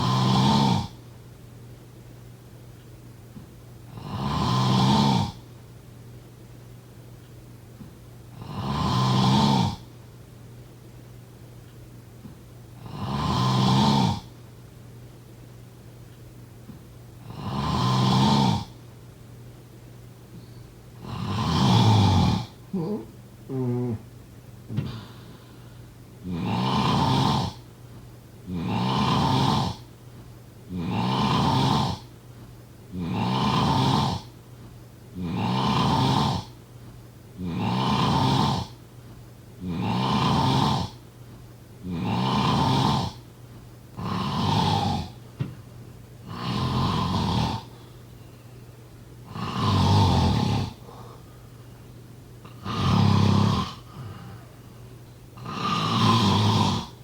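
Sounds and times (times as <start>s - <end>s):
person snoring: 0.0s - 1.0s, 3.9s - 5.4s, 8.4s - 9.9s, 12.8s - 14.3s, 17.2s - 18.8s, 21.0s - 24.1s, 24.7s - 27.6s, 28.5s - 29.9s, 30.7s - 32.1s, 32.9s - 34.3s, 35.2s - 36.6s, 37.4s - 38.8s, 39.6s - 41.0s, 41.8s - 43.2s, 43.9s - 45.2s, 46.2s - 47.9s, 49.2s - 51.4s, 52.4s - 54.8s, 55.4s - 57.0s.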